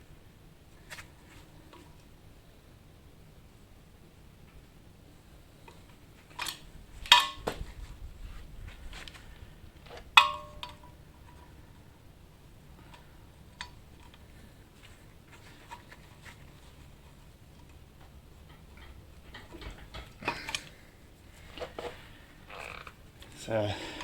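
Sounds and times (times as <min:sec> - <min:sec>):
sharp metal clang: 0:10.2 - 0:10.8.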